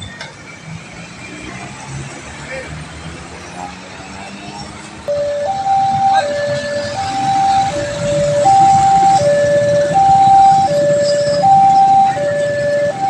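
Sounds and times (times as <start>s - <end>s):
two-tone crossing siren: 5.1s - 13.0s.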